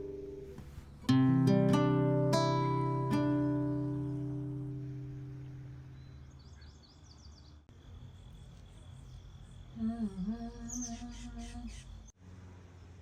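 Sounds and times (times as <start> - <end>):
low humming note: 0.0 - 6.2
small birds chirping: 3.5 - 12.2.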